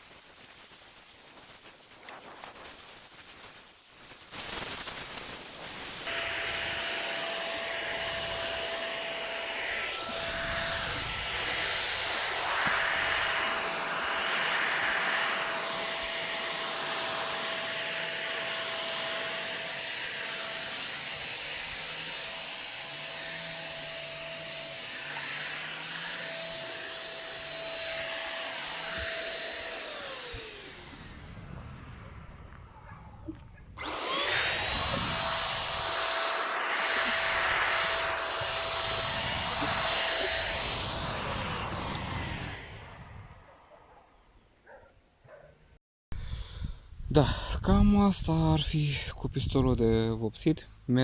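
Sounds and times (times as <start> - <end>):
hiss of spraying: 0.0 - 6.1
paint spray gun motor whine: 0.0 - 32.8, 33.4 - 44.4.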